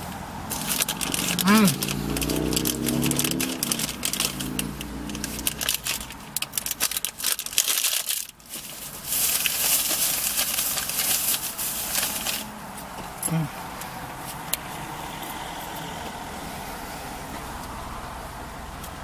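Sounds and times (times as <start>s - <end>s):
crunching cookies: 0.4s - 12.5s
snack bag rustling: 0.5s - 12.5s.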